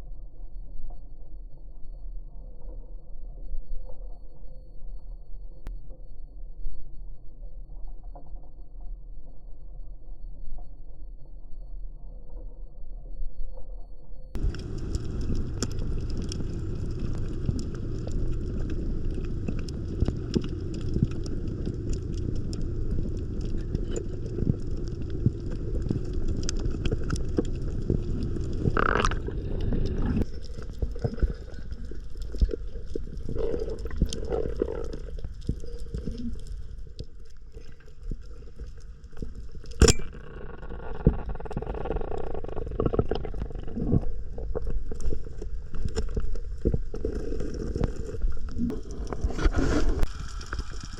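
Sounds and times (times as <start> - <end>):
underwater low rumble: 14.3 - 50.9
water gurgling: 14.4 - 36.8
clicks and crackles: 14.4 - 50.9.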